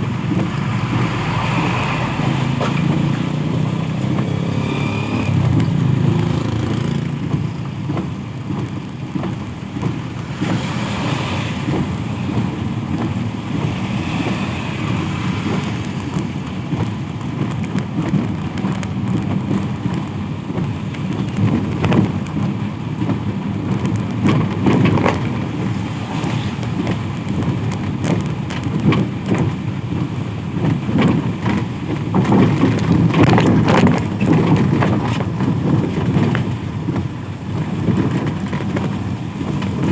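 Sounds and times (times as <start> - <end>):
steady rain pattering: 0.0 - 39.9
traffic on wet road: 0.0 - 39.9.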